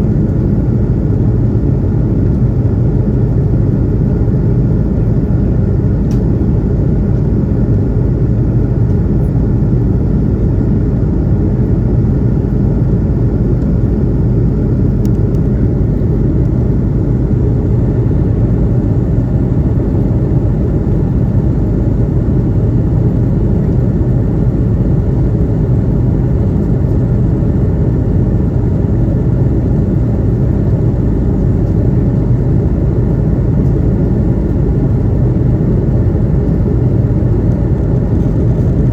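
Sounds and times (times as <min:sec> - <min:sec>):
aircraft cabin engine rumble: 0:00.0 - 0:38.9.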